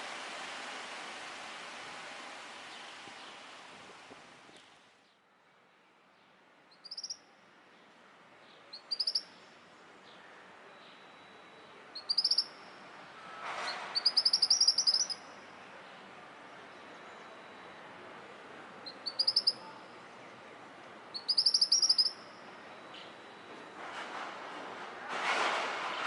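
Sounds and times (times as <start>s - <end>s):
small bird chirping: 6.7s - 7.2s, 8.7s - 9.4s, 12.0s - 12.7s, 14.0s - 15.3s, 18.8s - 19.8s, 21.1s - 23.2s.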